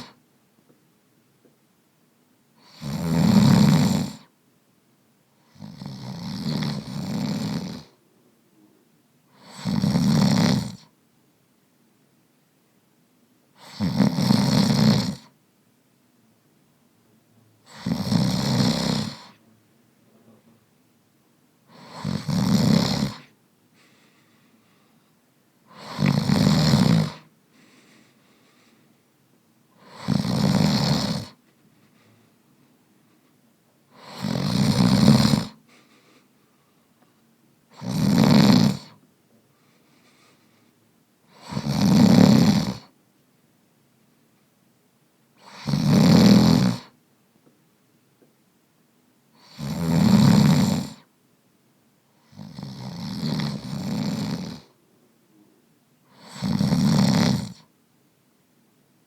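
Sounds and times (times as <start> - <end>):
man snoring: 2.6 - 4.3, 5.4 - 8.0, 9.4 - 10.9, 13.6 - 15.3, 17.6 - 19.4, 21.7 - 23.3, 25.7 - 27.3, 29.8 - 31.4, 33.9 - 35.6, 37.7 - 39.0, 41.3 - 42.9, 45.4 - 46.9, 49.4 - 51.1, 52.2 - 54.8, 56.1 - 57.6.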